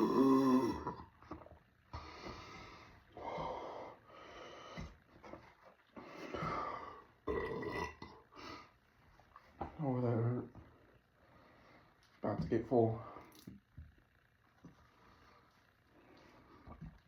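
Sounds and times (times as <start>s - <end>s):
man burping: 0.0s - 1.2s, 7.2s - 8.2s
man breathing hard: 2.0s - 5.0s, 6.0s - 7.1s.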